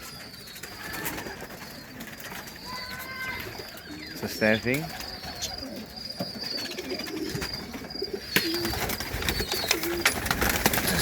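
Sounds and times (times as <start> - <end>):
birds pecking at grain: 0.0 - 11.0
pigeons cooing: 0.0 - 11.0.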